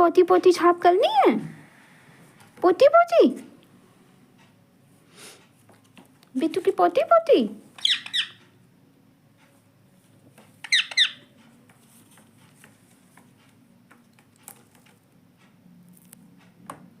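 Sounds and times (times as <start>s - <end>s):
faint clicks and taps: 5.4s - 6.4s, 11.4s - 17.0s
parakeet squawking: 7.8s - 8.4s, 10.6s - 11.3s.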